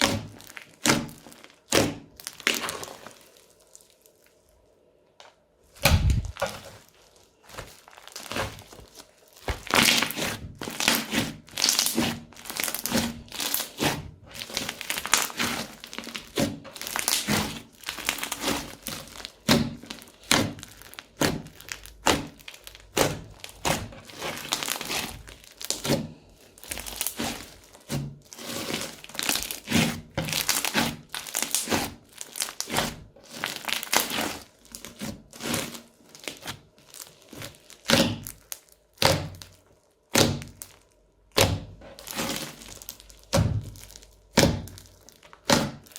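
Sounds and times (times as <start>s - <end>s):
crunchy slime squeezed by hand: 0.0s - 4.4s, 5.7s - 45.9s
loud thump: 5.8s - 6.4s.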